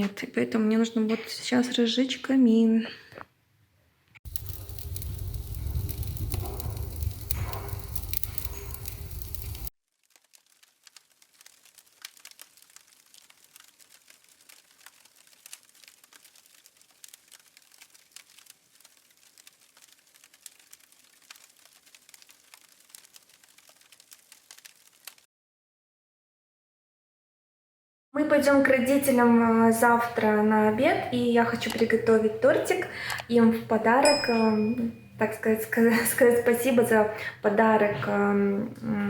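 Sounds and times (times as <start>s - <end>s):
wood fire crackling: 4.2s - 25.3s, 28.4s - 38.2s
rustling noise with low rumble: 4.3s - 25.2s, 29.0s - 34.0s.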